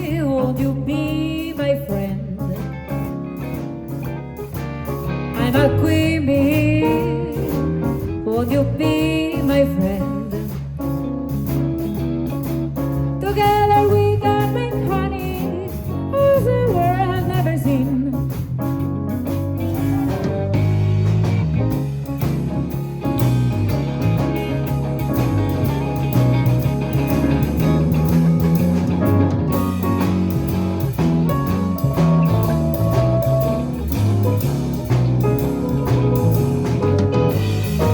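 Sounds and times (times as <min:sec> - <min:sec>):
woman singing: 0:00.0 - 0:02.7, 0:05.4 - 0:10.7, 0:13.2 - 0:18.4
live jazz blues band: 0:00.0 - 0:37.9.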